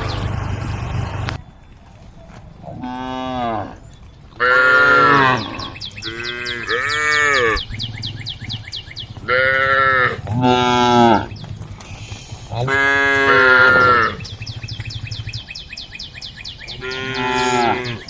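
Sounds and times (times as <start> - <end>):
cattle mooing: 2.6 - 3.8, 4.4 - 7.7, 9.2 - 11.3, 12.5 - 14.3, 16.7 - 18.0
rapid high-pitched chirping: 14.0 - 18.0.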